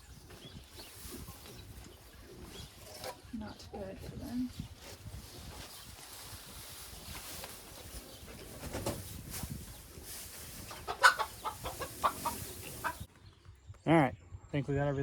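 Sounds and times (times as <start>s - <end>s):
chickens clucking: 0.0s - 13.1s
low rustling: 3.9s - 13.1s.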